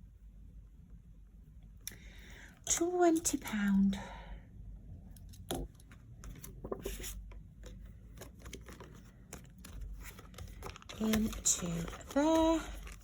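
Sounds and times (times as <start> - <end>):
paper rustling: 6.2 - 13.0.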